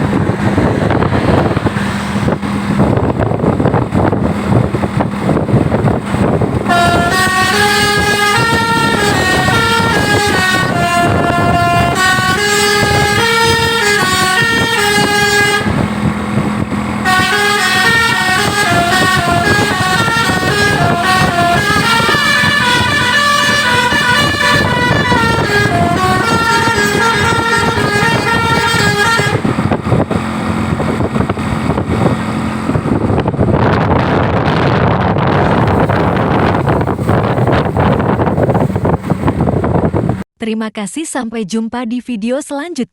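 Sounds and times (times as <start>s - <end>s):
road and wind noise: 0.0s - 40.3s
multi-tone musical air horn: 6.7s - 16.1s, 17.0s - 29.9s.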